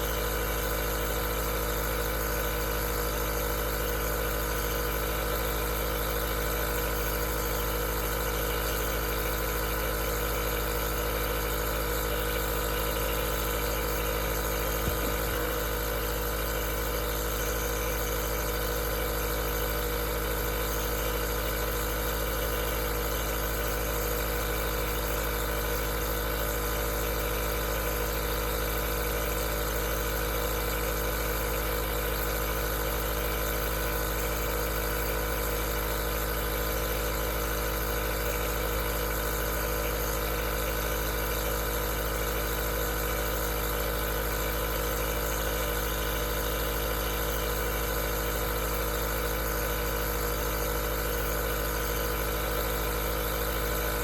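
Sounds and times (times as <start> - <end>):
nebulizer motor hum: 0.0 - 54.0.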